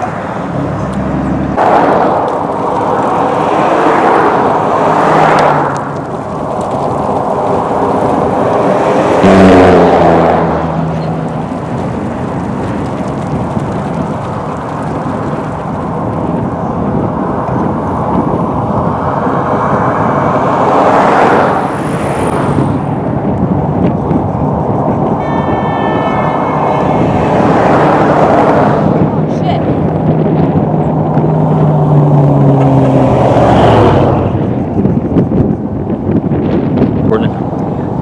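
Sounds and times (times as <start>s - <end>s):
wind: 0.0s - 38.0s
rain: 1.6s - 9.9s, 10.5s - 16.5s.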